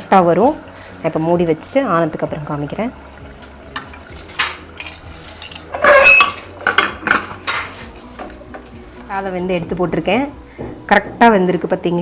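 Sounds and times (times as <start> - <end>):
metal cookware clattering: 3.8 - 8.7.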